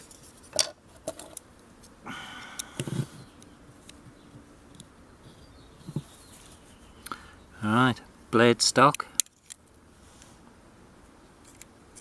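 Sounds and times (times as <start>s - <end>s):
scraping rustle: 5.2s - 6.9s.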